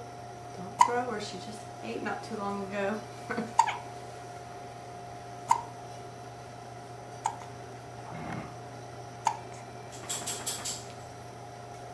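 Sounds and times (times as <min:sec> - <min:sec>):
person hiccuping: 0:03.5 - 0:03.8, 0:05.5 - 0:05.7.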